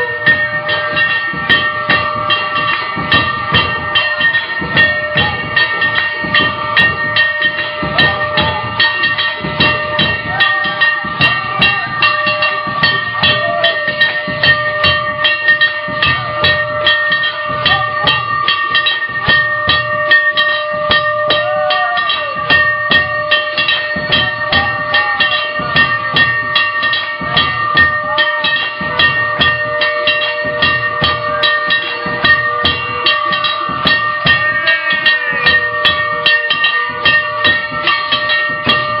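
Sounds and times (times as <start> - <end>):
metal bells clanging: 0.0 - 39.0
percussion in fast rhythm: 0.0 - 39.0
sustained ringing tones: 0.0 - 39.0.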